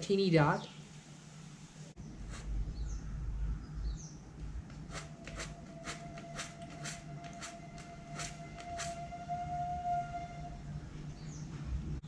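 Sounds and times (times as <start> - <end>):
short scraping strokes: 2.2 - 2.6, 4.7 - 9.1.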